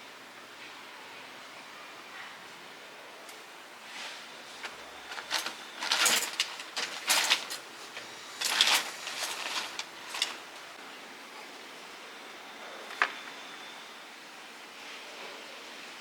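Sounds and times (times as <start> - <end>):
small hard objects clattering: 4.5 - 10.8.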